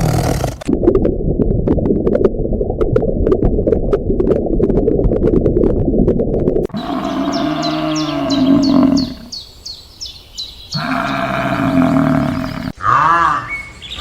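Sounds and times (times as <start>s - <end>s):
long low animal calls: 6.7s - 9.4s, 10.8s - 14.0s
small birds chirping: 6.7s - 14.0s.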